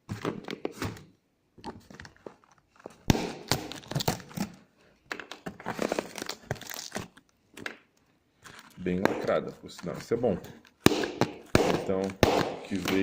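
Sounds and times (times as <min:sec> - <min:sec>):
cardboard box tearing and crinkling: 0:05.7 - 0:07.2.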